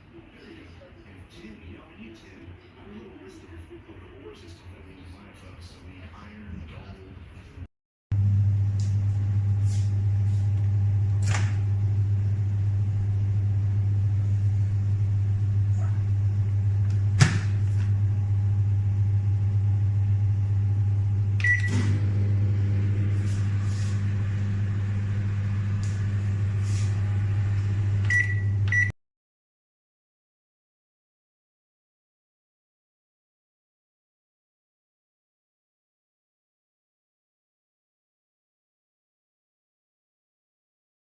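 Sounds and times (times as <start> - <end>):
microwave oven humming: 8.1 - 29.0
microwave clicks: 10.6 - 11.8, 21.4 - 26.6.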